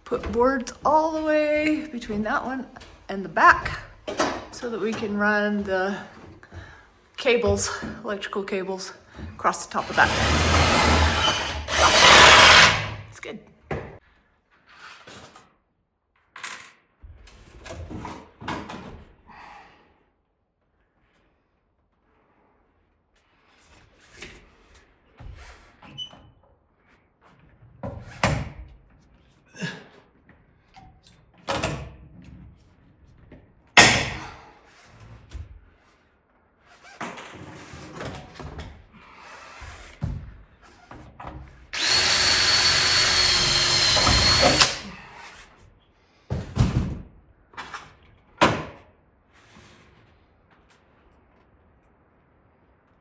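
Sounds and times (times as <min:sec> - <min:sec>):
power drill whining: 0:09.8 - 0:13.0, 0:41.8 - 0:45.0.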